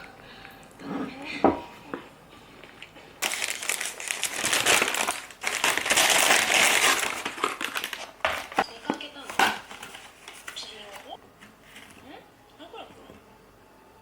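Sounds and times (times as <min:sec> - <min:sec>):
crinkling and rustling: 0:02.7 - 0:12.1.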